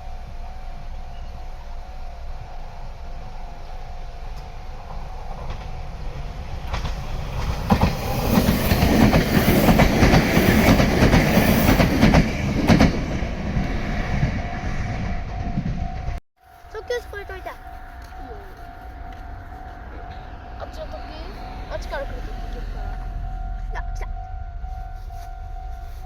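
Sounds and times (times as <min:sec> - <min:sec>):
level crossing warning bell: 0:00.0 - 0:07.3, 0:13.0 - 0:26.0
electric train passing: 0:00.0 - 0:26.0
wheels clicking over rail joints: 0:04.3 - 0:14.5.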